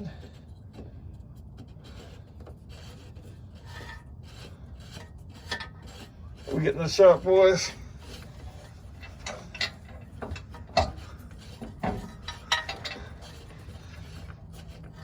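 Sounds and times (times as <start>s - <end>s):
tools clicking and knocking: 8.0s - 15.0s.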